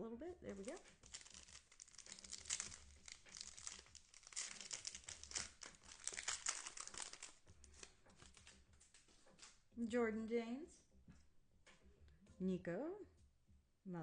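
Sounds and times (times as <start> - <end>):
plastic wrapper tearing and crinkling: 0.5 - 9.6.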